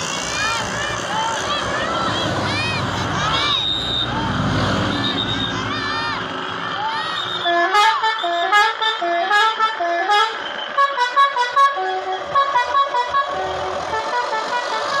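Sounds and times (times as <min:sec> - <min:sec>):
musical bus horn tune: 0:07.0 - 0:15.0.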